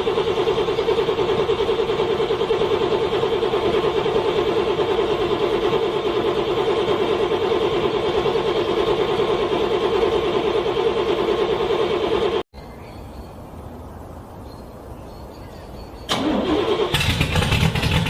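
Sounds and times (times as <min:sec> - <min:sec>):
car engine cranking: 0:16.1 - 0:18.0.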